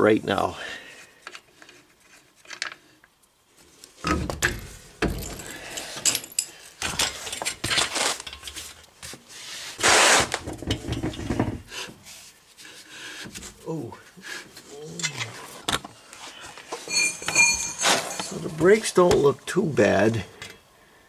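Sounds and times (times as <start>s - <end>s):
metal tools clinking and scraping: 5.0s - 8.8s, 14.9s - 15.5s, 16.7s - 18.9s.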